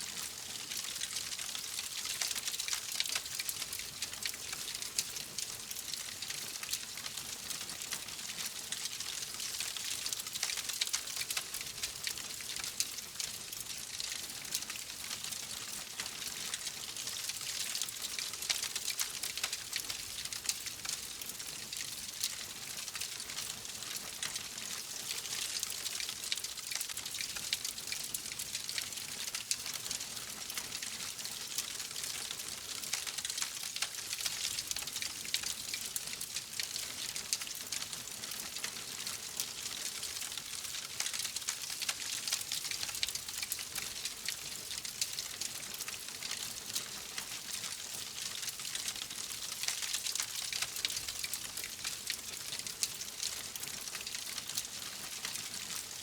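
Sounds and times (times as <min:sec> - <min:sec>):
wood fire crackling: 0:15.6 - 0:47.6, 0:48.3 - 0:55.7.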